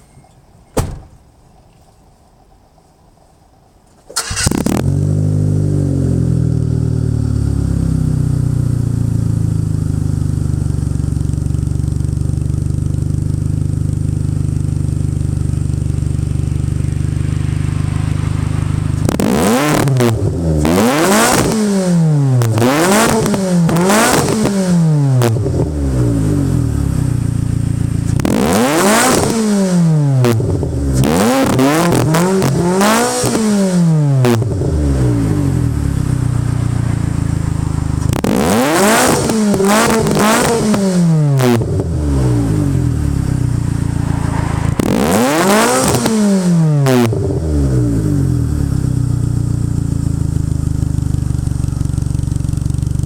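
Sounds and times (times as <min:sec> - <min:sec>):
car engine idling and revving: 0:00.0 - 0:53.0.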